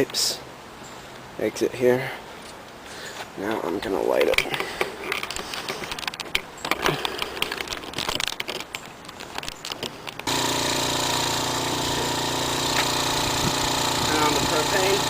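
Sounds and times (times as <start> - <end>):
handling clicks and knocks: 3.4 - 10.3
electric air compressor running: 10.2 - 15.0.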